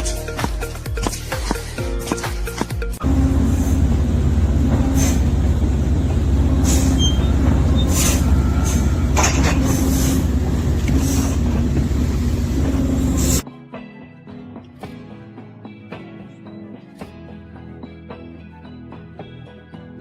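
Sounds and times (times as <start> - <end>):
heavy machine engine rumbling: 3.0 - 13.4.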